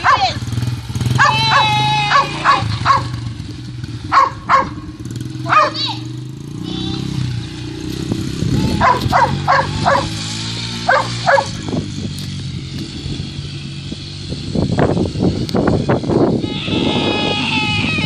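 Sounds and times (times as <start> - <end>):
dog barking: 0.0 - 0.4, 1.2 - 3.2, 4.1 - 4.8, 5.4 - 6.0, 8.8 - 10.2, 10.8 - 11.6
dirt bike engine idling: 0.0 - 18.0.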